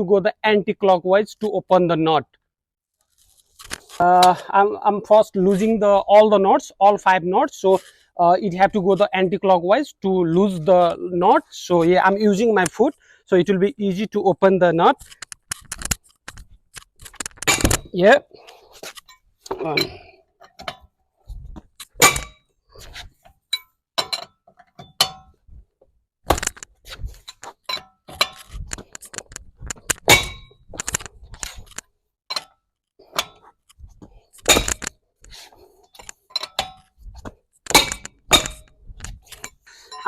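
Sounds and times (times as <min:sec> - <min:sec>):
metal clanks and clinks: 0:23.5 - 0:25.4, 0:26.4 - 0:33.7, 0:34.4 - 0:35.0, 0:35.9 - 0:37.0, 0:37.6 - 0:40.0.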